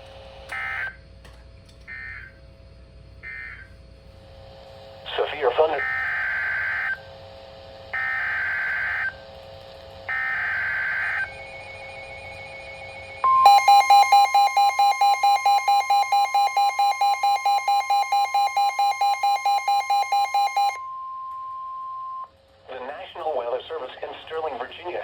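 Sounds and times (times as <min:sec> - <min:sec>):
warning alarm tone: 0:00.5 - 0:01.0, 0:03.2 - 0:03.7, 0:05.1 - 0:07.2, 0:07.9 - 0:09.3, 0:10.0 - 0:22.3
screeching digital data bursts: 0:10.1 - 0:20.8
fast pulsing beep: 0:11.2 - 0:20.9.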